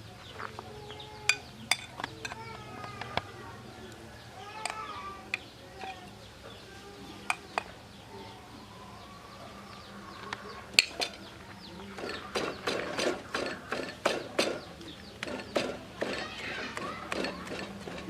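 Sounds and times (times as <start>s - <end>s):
faint birds chirping: 0.0s - 18.0s
kitchen utensils clinking: 1.2s - 3.3s, 10.8s - 11.3s.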